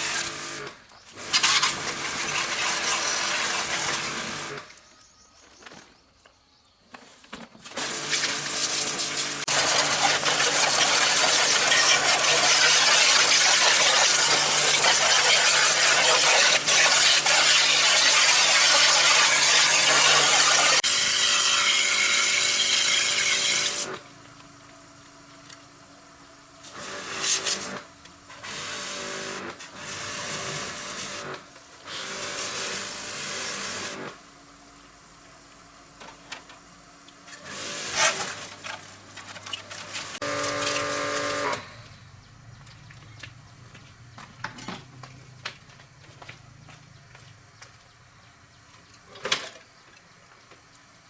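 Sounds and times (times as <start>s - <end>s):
motorised tool hissing: 7.7s - 24.0s, 26.6s - 27.8s
motor hum: 37.4s - 49.0s.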